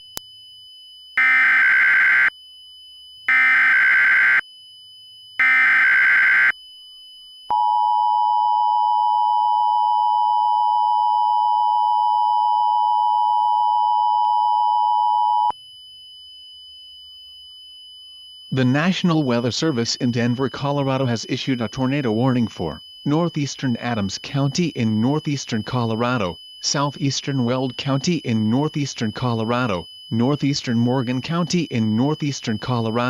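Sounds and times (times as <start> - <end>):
two-tone attention signal: 1.2 - 2.3, 3.3 - 4.4, 5.4 - 6.5
warbling data tones: 1.2 - 2.3, 3.3 - 4.4, 5.4 - 6.5.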